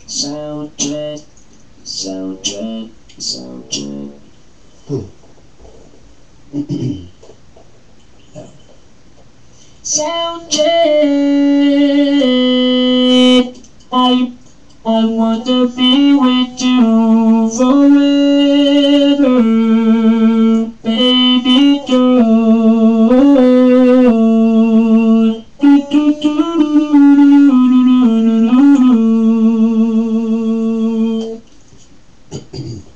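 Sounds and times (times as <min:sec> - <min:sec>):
synth through a talk box: 0:01.9 - 0:04.3.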